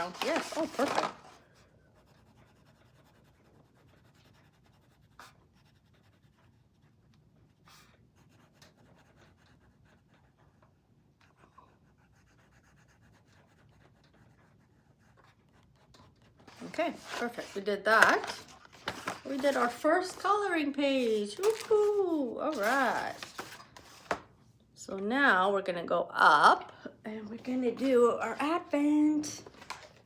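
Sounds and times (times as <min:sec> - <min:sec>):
colouring tool scratching paper: 0:00.0 - 0:01.1, 0:01.9 - 0:10.6, 0:11.3 - 0:24.0.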